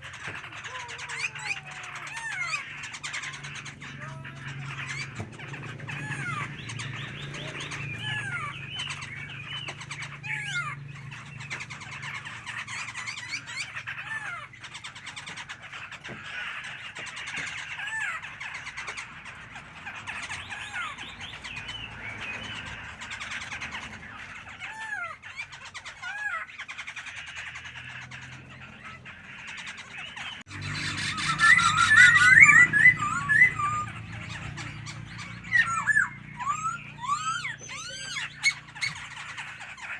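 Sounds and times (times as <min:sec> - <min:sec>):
songbird singing: 0:00.0 - 0:39.9.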